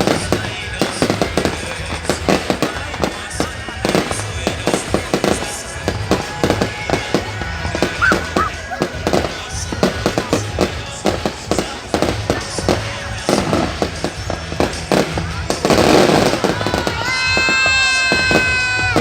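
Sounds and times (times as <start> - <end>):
fireworks banging: 0.0 - 19.0
music: 0.0 - 19.0.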